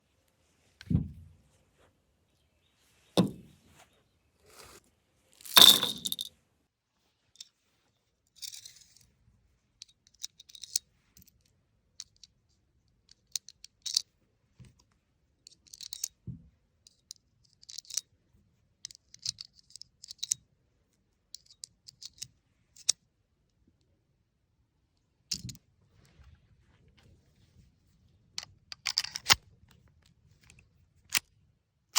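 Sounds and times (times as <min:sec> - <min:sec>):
pistol being handled: 0:03.2 - 0:03.5, 0:05.4 - 0:06.3, 0:28.4 - 0:29.4.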